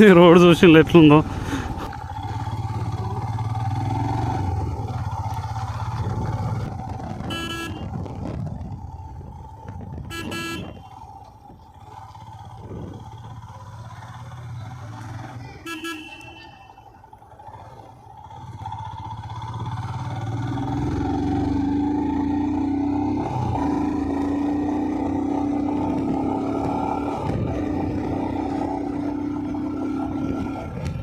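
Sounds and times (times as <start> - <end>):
motorcycle engine running: 0.0 - 31.0
vehicle horn toots: 7.2 - 8.0, 10.0 - 11.0, 15.5 - 16.9.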